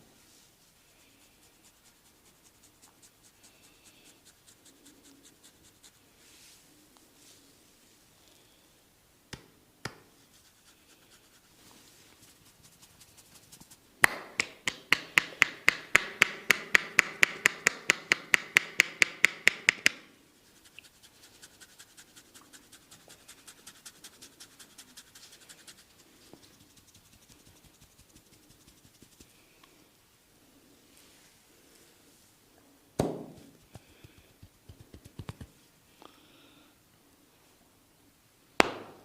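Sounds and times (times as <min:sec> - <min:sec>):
hands slapping head: 0:14.0 - 0:20.0, 0:33.0 - 0:35.6, 0:38.6 - 0:39.0
soft quick taps: 0:33.0 - 0:35.6.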